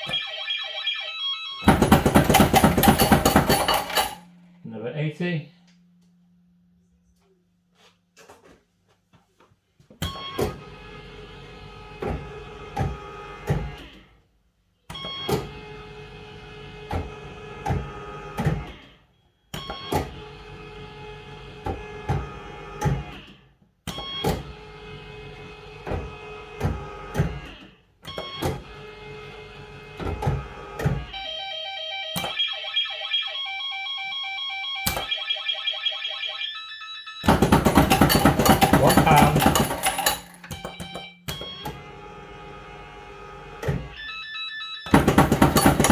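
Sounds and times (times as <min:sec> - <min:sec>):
electronic beeping tune: 0:00.0 - 0:02.4, 0:31.2 - 0:38.5, 0:40.3 - 0:41.8
reels stopping with clunks: 0:44.9 - 0:45.9.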